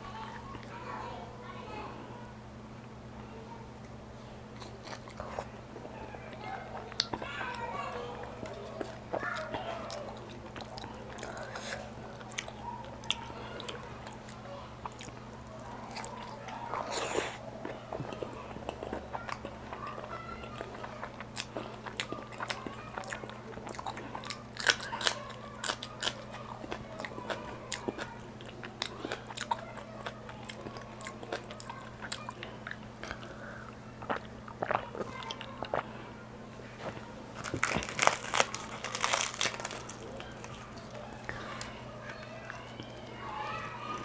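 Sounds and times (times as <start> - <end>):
chewing and biting: 4.5 - 35.9, 36.8 - 44.0.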